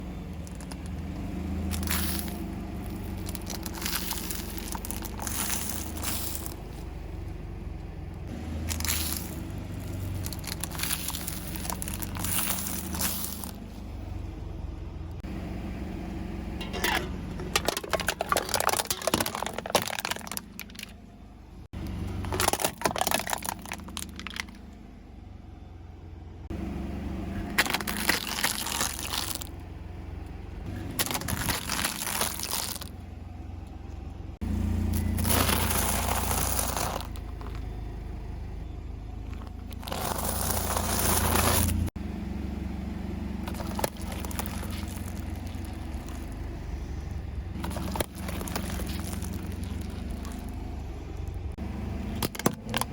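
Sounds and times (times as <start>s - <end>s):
foam balls crunching under tyre: 0.0s - 7.4s, 8.2s - 13.9s, 16.6s - 21.1s, 21.7s - 24.8s, 27.3s - 29.6s, 30.6s - 33.1s, 34.7s - 38.0s, 39.1s - 42.0s, 43.4s - 52.9s
car humming: 0.0s - 52.9s.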